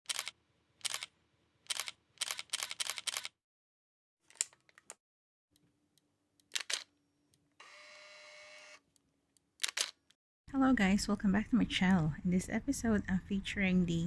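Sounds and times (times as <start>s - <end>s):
camera shutter clicks: 0.1s - 1.1s, 1.7s - 3.4s, 6.5s - 6.9s, 9.6s - 10.0s.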